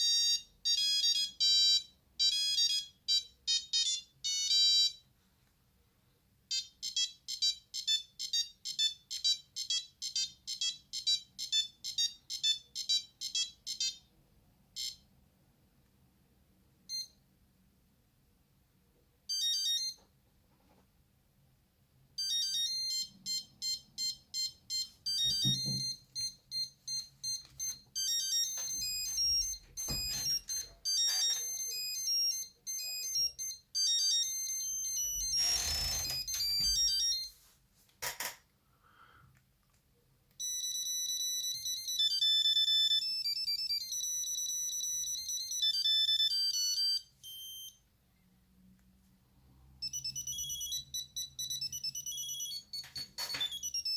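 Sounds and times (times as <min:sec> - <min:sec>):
monophonic phone ringtones: 0:00.0 - 0:05.0, 0:06.5 - 0:14.1, 0:14.8 - 0:15.0, 0:19.3 - 0:20.0, 0:22.2 - 0:37.4, 0:40.4 - 0:47.8, 0:49.8 - 0:53.9.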